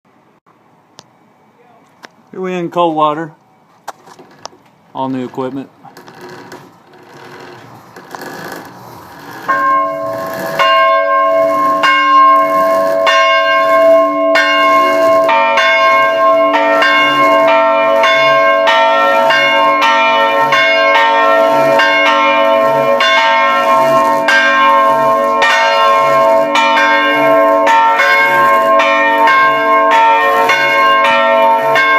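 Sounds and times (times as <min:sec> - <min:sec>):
church bells clanging: 0:09.2 - 0:31.9.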